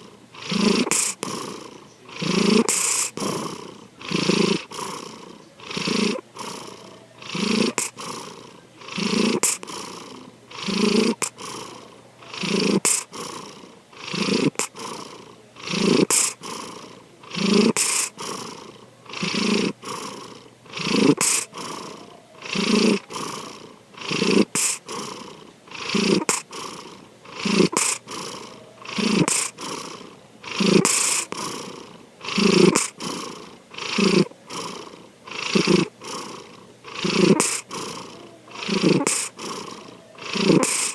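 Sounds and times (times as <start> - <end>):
cat snoring: 0.0 - 40.9.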